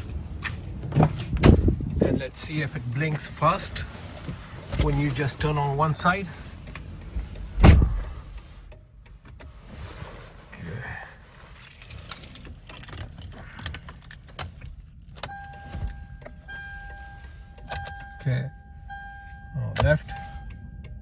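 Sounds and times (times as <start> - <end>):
car keys jangling: 11.5 - 16.5.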